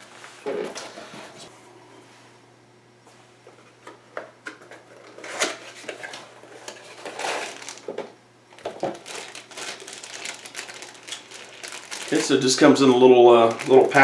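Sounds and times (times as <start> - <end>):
package rustling: 5.0 - 14.0.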